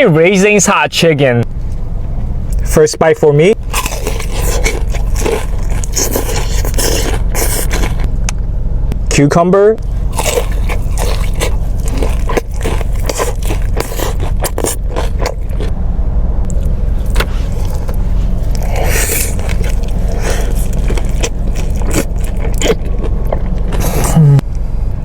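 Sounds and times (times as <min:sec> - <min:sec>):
low rumble: 0:00.0 - 0:25.0
crunching and wet chewing: 0:03.6 - 0:08.1, 0:09.8 - 0:15.7, 0:16.5 - 0:24.4.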